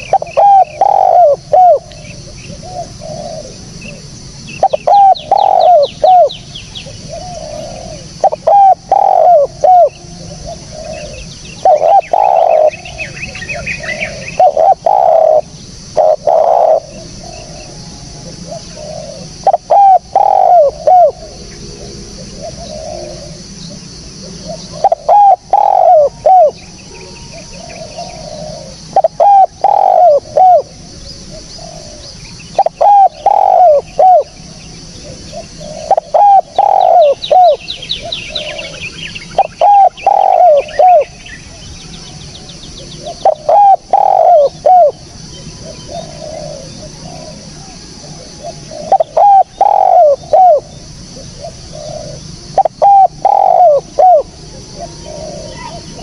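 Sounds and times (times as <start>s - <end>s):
small bird chirping: 0.0s - 17.7s
dove cooing: 0.0s - 56.0s.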